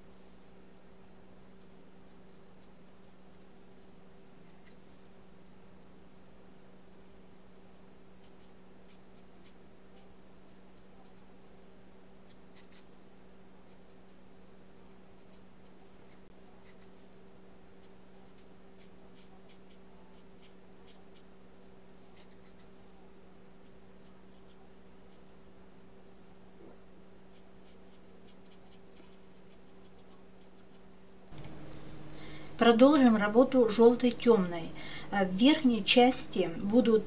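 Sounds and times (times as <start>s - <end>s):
paintbrush swishing on paper: 1.6s - 5.2s, 15.6s - 21.2s
low hum: 19.8s - 37.0s.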